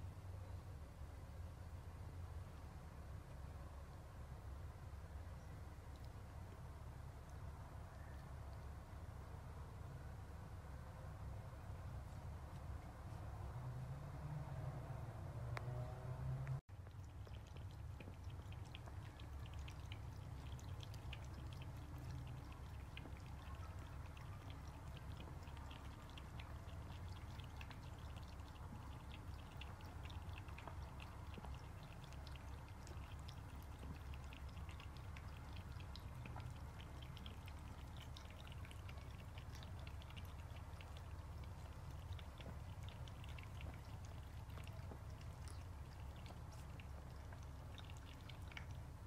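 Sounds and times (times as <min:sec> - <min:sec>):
low steady rumble: 0:00.0 - 0:49.0
kittens' wet mouth clicks: 0:16.8 - 0:49.0.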